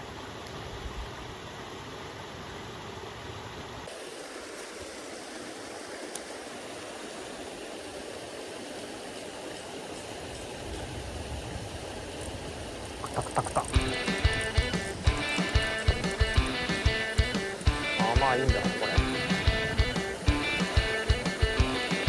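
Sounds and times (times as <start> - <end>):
steady rushing noise: 9.0 - 22.0.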